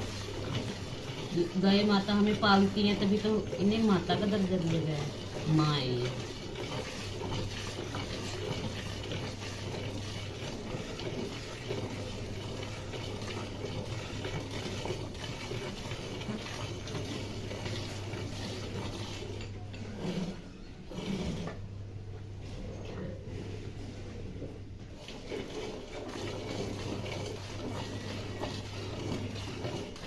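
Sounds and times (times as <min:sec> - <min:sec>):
milk squirting into a pail: 0:00.0 - 0:21.6, 0:24.9 - 0:30.0.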